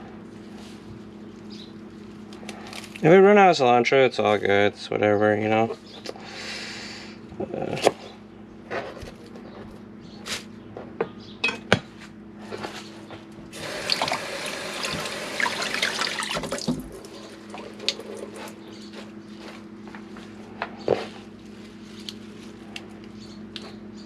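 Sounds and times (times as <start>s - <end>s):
steady low hum: 0.0s - 24.0s
tap running into a sink: 13.6s - 17.0s.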